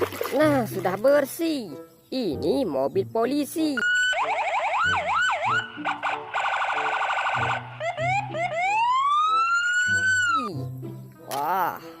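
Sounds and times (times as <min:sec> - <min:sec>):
electronic police siren: 0:03.8 - 0:10.5.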